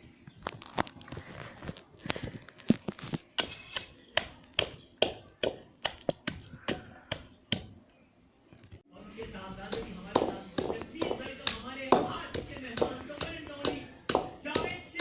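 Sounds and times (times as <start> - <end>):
pestle knocking in mortar: 3.4 - 7.8, 9.7 - 15.0.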